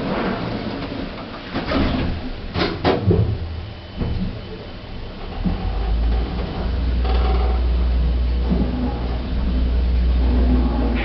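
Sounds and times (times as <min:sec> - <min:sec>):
lift hum and rumble: 0:00.0 - 0:11.0.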